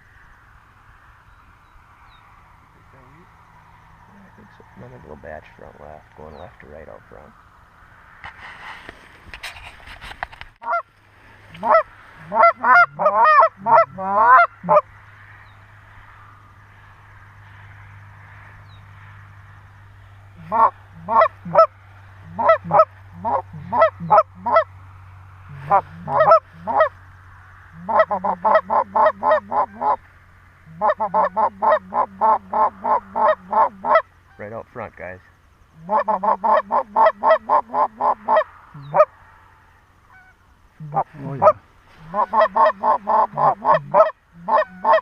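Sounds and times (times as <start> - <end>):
goose honking: 10.6 - 10.9, 11.5 - 14.8, 20.4 - 24.7, 25.5 - 27.0, 27.7 - 34.6, 35.8 - 39.1, 40.1 - 45.0.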